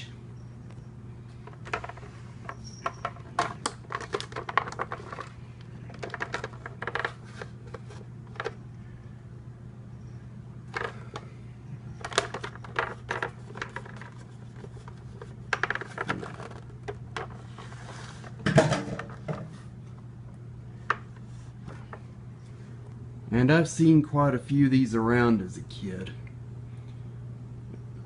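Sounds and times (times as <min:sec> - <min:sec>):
steady low hum: 0:00.0 - 0:28.0
plastic clatter: 0:01.4 - 0:08.6, 0:10.7 - 0:11.3, 0:12.0 - 0:17.4, 0:18.3 - 0:19.5
plastic fan handling clicks and knocks: 0:01.4 - 0:08.6, 0:10.7 - 0:11.3, 0:12.0 - 0:17.5, 0:18.3 - 0:20.0, 0:20.8 - 0:22.1.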